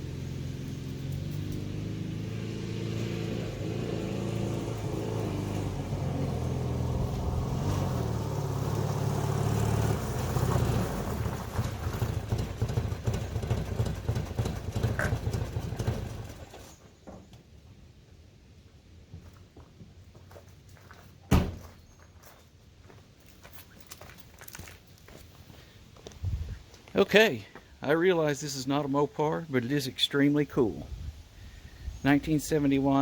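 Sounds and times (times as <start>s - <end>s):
car engine running: 0.0s - 16.7s.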